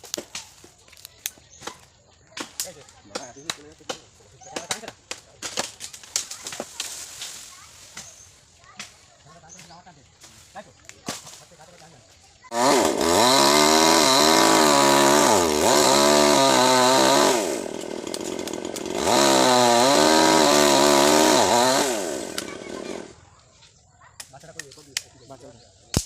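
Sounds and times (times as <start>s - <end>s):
chainsaw cutting wood: 12.5s - 23.2s.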